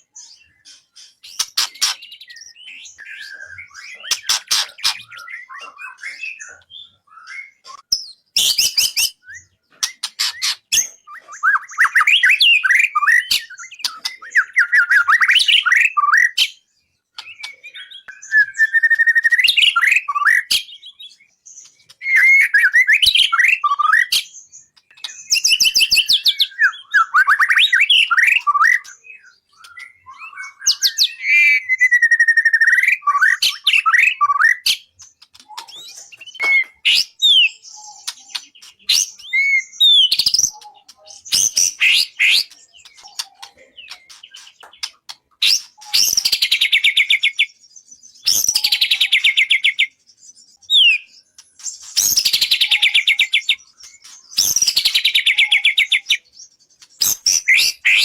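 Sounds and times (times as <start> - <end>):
songbird singing: 0.0 - 58.0.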